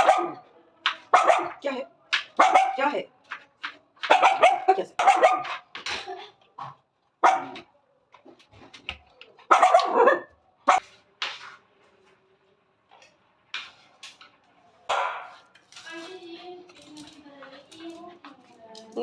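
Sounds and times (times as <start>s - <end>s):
dog barking and yipping: 0.0s - 0.5s, 1.1s - 1.6s, 2.4s - 2.9s, 4.0s - 5.7s, 7.2s - 7.7s, 9.5s - 10.8s.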